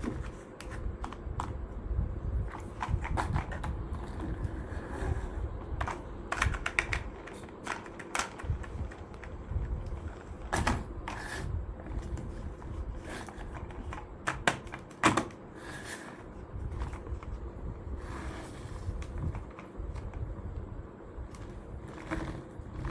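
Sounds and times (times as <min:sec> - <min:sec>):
small hard parts clicking: 0:05.7 - 0:10.9.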